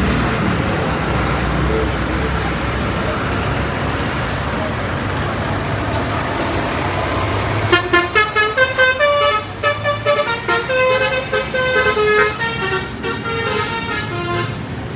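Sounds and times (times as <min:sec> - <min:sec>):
bus engine running: 0:00.0 - 0:14.9
musical air horn playing tune: 0:07.6 - 0:14.6.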